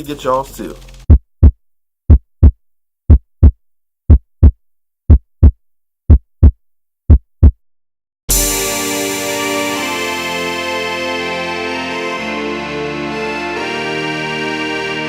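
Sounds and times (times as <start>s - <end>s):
heartbeat thumps: 1.0s - 7.6s
keyboard and guitar music: 8.3s - 15.0s.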